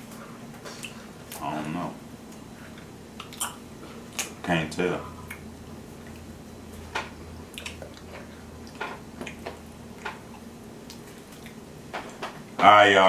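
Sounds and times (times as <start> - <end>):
wet chewing clicks and smacks: 2.3 - 4.4, 5.2 - 6.3, 7.5 - 11.6.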